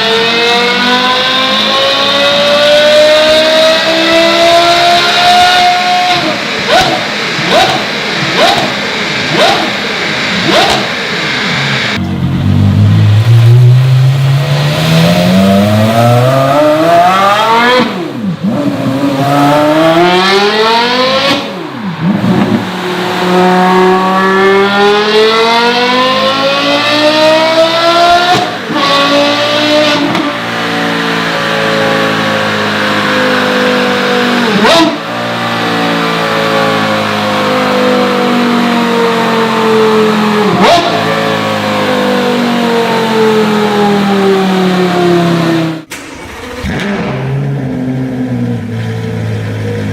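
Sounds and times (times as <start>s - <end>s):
sports car engine revving: 0.0s - 49.9s
exhaust cracks: 45.8s - 49.9s.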